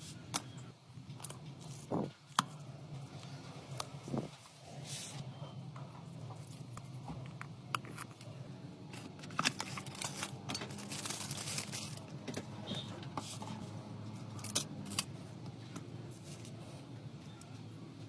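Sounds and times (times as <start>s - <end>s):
steady low hum: 0.0s - 18.0s
hand tools clicking and scraping: 6.4s - 13.6s.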